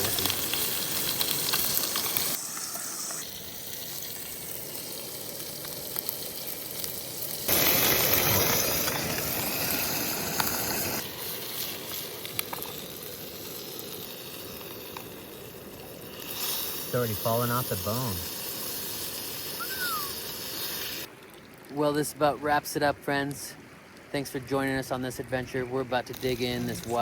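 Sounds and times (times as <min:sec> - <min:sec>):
fish sizzling in a pan: 0:00.0 - 0:21.1.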